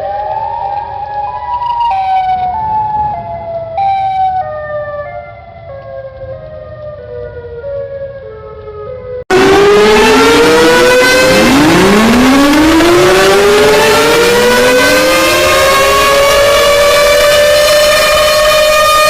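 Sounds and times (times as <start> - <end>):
civil defense sirens wailing: 0.0 - 19.0
electronic alarm tone stepping down: 9.3 - 19.0.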